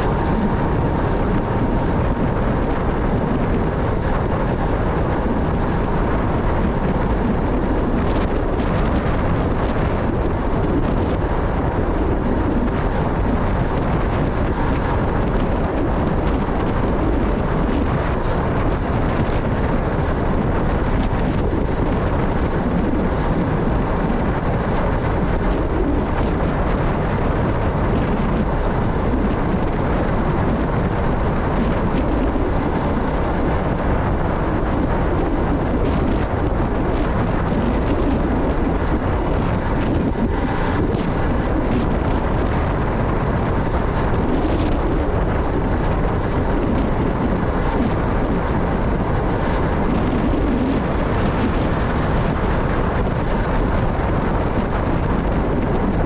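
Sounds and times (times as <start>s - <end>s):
wind on microphone: 0.0s - 56.0s
motorcycle engine: 36.9s - 45.1s.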